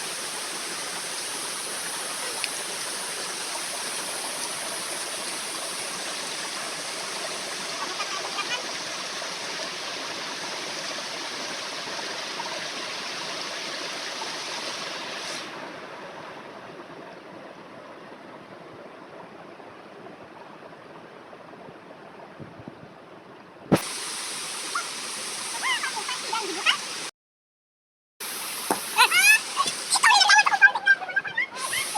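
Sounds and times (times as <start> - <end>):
waterfall rushing: 0.0 - 10.1, 23.7 - 27.1, 28.2 - 31.9.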